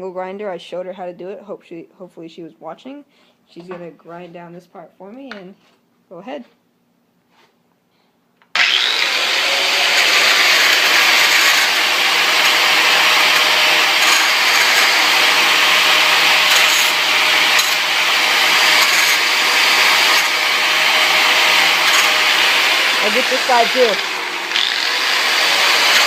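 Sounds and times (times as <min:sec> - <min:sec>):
angle grinder grinding metal: 0:08.5 - 0:26.0.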